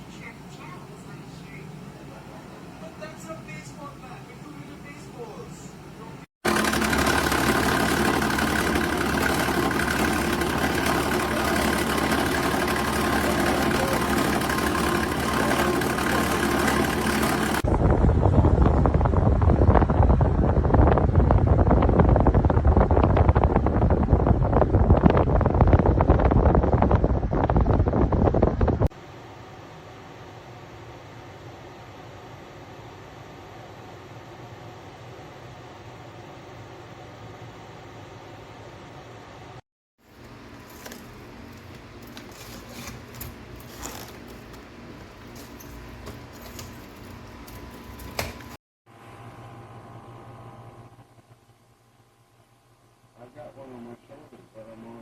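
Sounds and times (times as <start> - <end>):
air conditioner humming: 0.0 - 20.4, 29.0 - 55.0
sharp clicks and rattles: 6.5 - 17.6
wind buffeting microphone: 17.6 - 28.9.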